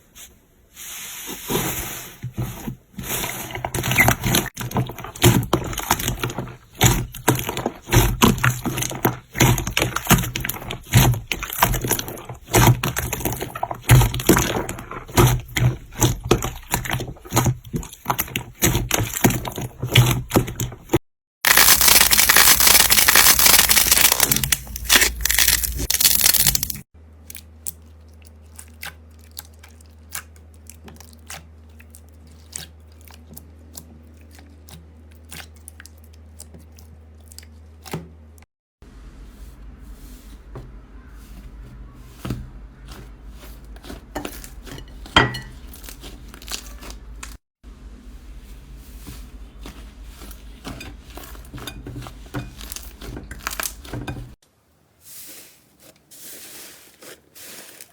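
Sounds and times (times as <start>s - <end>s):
slime crunching and popping: 21.4s - 34.5s, 52.6s - 54.0s.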